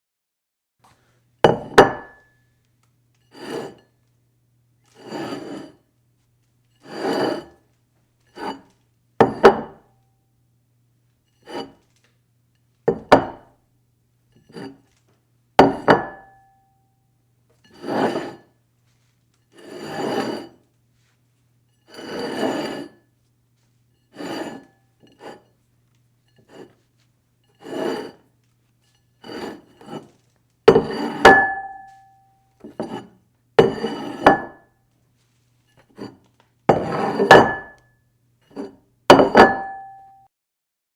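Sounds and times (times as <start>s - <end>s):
dishes scraping across table: 1.5s - 2.3s, 3.3s - 3.9s, 4.9s - 5.8s, 6.8s - 7.6s, 8.3s - 9.8s, 11.4s - 11.9s, 14.4s - 15.0s, 17.6s - 18.5s, 19.5s - 20.6s, 21.8s - 23.0s, 24.1s - 25.6s, 26.4s - 26.9s, 27.5s - 28.3s, 28.9s - 34.6s, 35.8s - 37.8s
sharp ringing clink: 39.6s - 40.3s.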